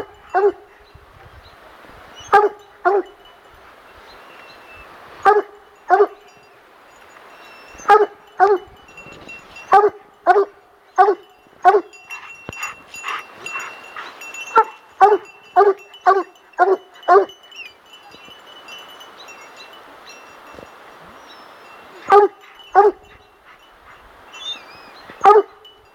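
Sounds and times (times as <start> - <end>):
dog barking: 0.0 - 0.7, 2.3 - 3.2, 5.2 - 6.2, 7.8 - 8.7, 9.7 - 11.9, 14.5 - 17.4, 22.0 - 23.1, 25.2 - 25.6.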